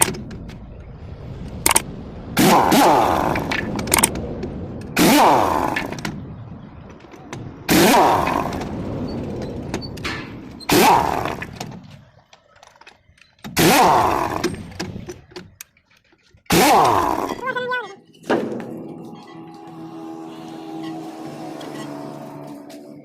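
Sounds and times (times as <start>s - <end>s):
machine motor bursts: 19.4s - 23.0s.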